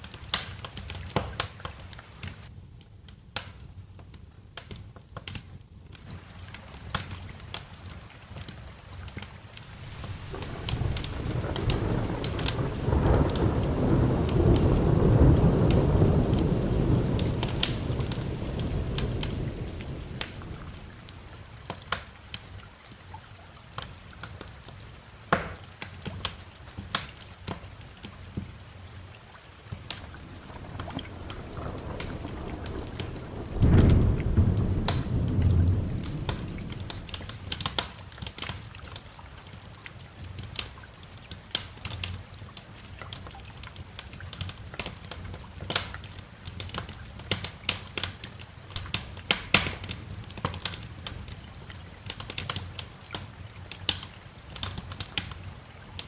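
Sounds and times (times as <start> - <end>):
steady rain: 0.0 - 56.0
wood fire crackling: 0.0 - 56.0
thunder rumbling: 9.7 - 22.5, 29.6 - 38.0.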